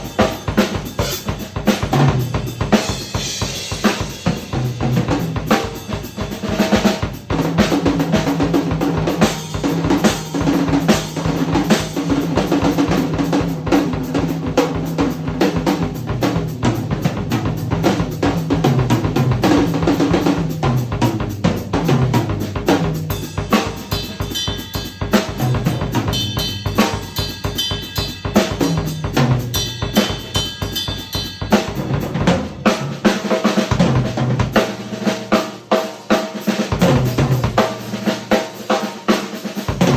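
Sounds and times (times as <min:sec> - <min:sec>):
cymbals: 0:00.0 - 0:33.7
drum kit playing: 0:00.0 - 0:39.9.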